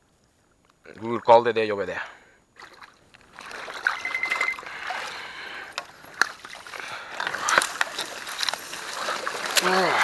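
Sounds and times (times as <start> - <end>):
water sloshing and trickling: 2.5 - 10.0
high chirp: 3.9 - 4.6.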